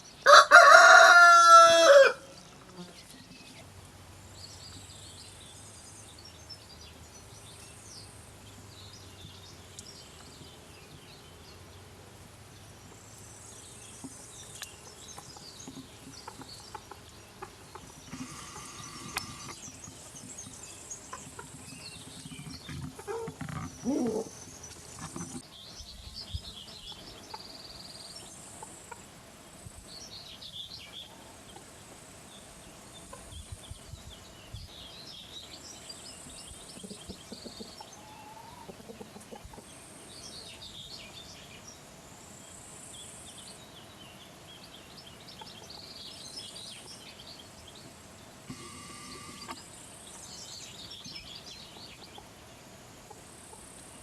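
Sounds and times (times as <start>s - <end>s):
small birds chirping: 2.2s - 54.0s.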